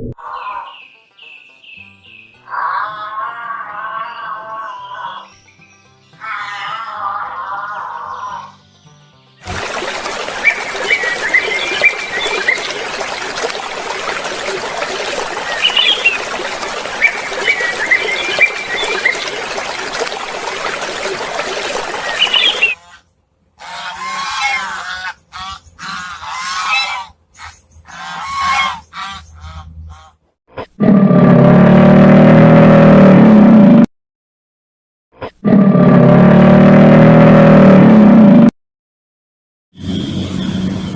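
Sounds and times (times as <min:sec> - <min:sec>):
birds chirping: 0:09.4 - 0:22.8
geese honking: 0:09.5 - 0:30.2
loud low roar: 0:30.8 - 0:33.9, 0:35.4 - 0:38.5.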